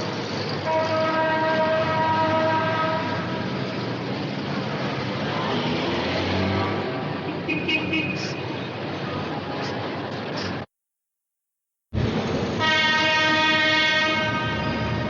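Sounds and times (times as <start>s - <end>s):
continuous rumbling noise: 8.3s - 10.7s, 11.9s - 13.1s.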